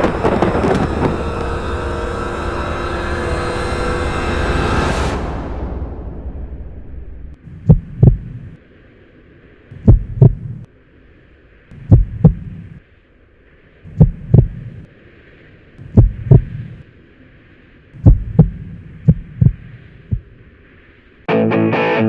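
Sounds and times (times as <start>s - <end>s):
heartbeat thumps: 7.4s - 8.6s, 9.7s - 10.7s, 11.7s - 12.8s, 13.9s - 14.8s, 15.8s - 16.7s, 18.0s - 20.4s.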